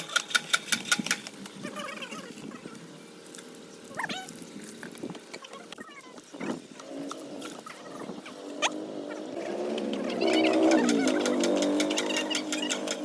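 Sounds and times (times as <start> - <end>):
hand pump squeak: 10.2 - 13.0.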